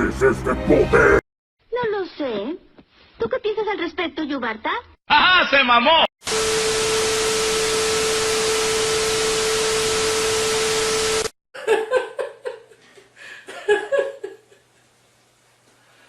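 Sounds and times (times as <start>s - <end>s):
person laughing: 11.6s - 14.7s.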